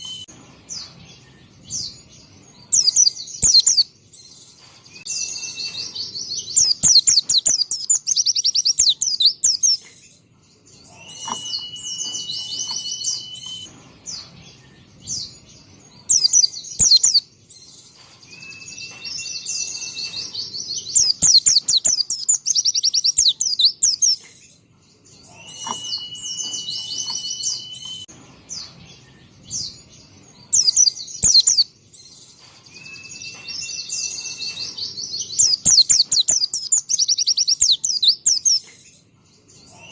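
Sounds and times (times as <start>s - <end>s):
bird twittering trills: 0.0s - 39.9s.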